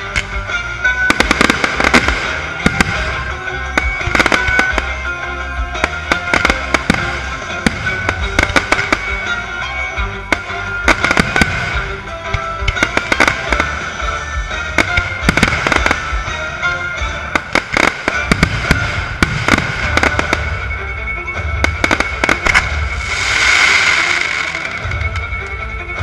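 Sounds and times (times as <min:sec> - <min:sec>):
fireworks bangs and crackles: 0:00.0 - 0:26.0
music: 0:00.0 - 0:26.0
rising hiss: 0:22.7 - 0:25.0.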